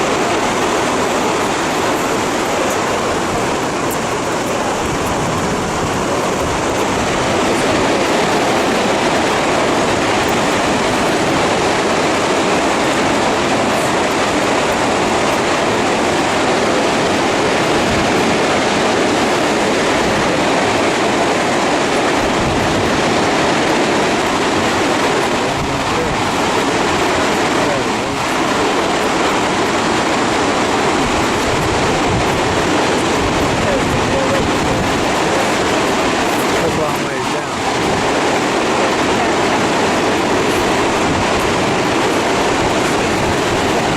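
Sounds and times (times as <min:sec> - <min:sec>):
waterfall rushing: 0:00.0 - 0:43.9.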